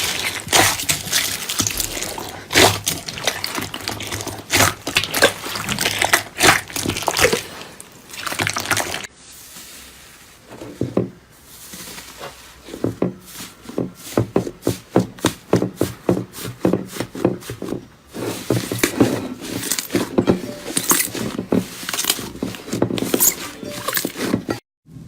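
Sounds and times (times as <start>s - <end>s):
slime squishing with sticky pops: 0.0s - 9.1s.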